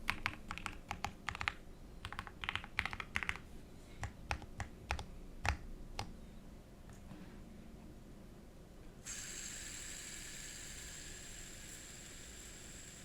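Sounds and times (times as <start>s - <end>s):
mechanical keyboard typing: 0.1s - 3.4s.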